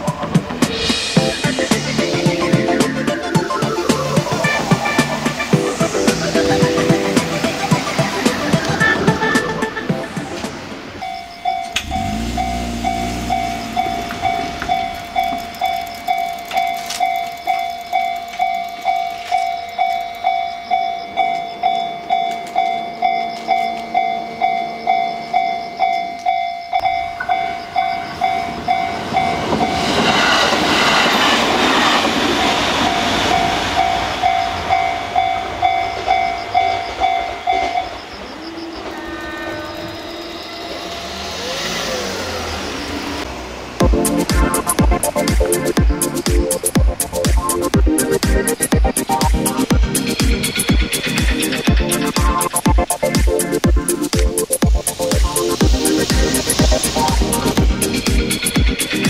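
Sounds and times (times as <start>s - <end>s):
train passing: 0.0s - 59.0s
level crossing bell ringing: 11.0s - 29.8s.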